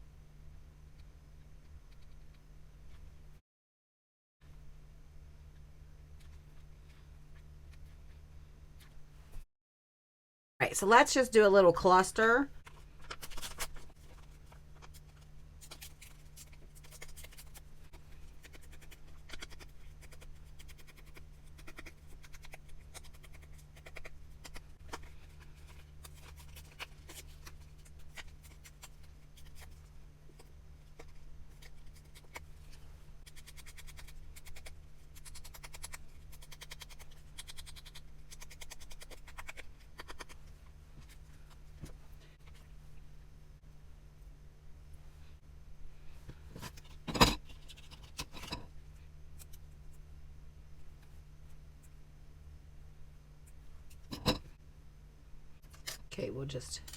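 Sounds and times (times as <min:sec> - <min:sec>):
low electrical hum: 0:00.0 - 0:03.4, 0:04.4 - 0:09.4, 0:10.6 - 0:56.9
paper rustling: 0:12.6 - 0:17.7.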